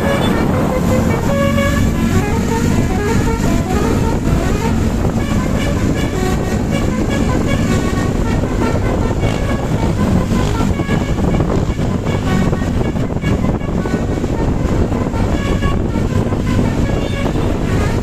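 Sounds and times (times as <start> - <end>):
loud low rumble: 0.0 - 17.8
melodic air horn tune: 0.0 - 18.0.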